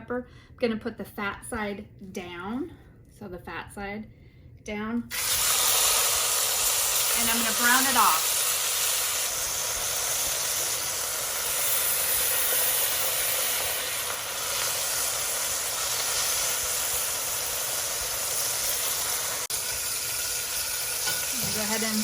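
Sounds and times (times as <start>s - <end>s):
meat sizzling in oil: 5.1s - 22.0s.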